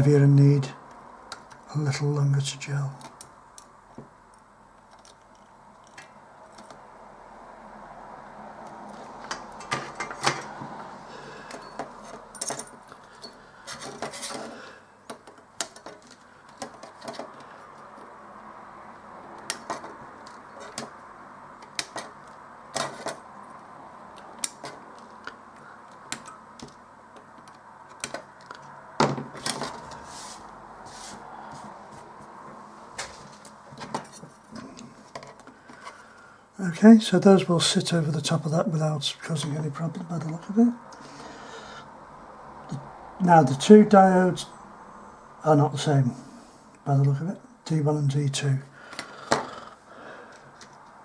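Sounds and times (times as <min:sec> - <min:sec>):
low background hiss: 0:00.0 - 0:08.2, 0:32.6 - 0:48.9.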